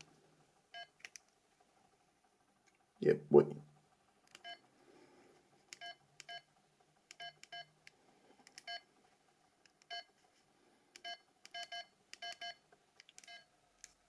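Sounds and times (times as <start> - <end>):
phone keypad beeps: 11.0 - 12.6.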